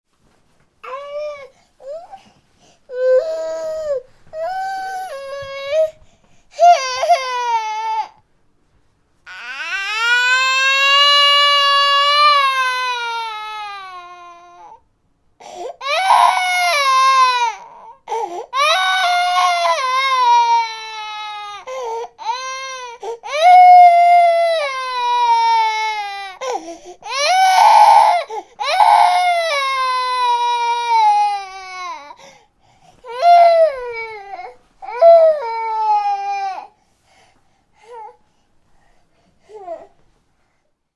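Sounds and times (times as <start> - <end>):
baby crying: 2.9 - 6.0, 6.6 - 8.2, 9.3 - 14.8, 15.8 - 32.2, 33.1 - 36.7.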